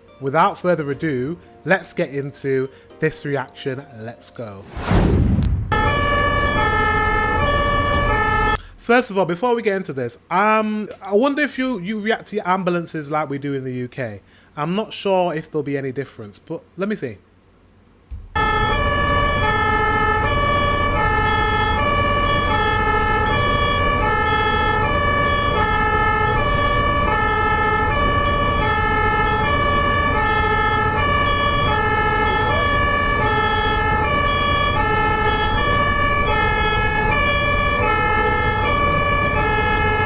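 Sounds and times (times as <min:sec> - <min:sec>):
ambulance two-tone siren: 0:05.7 - 0:08.7, 0:18.4 - 0:40.0.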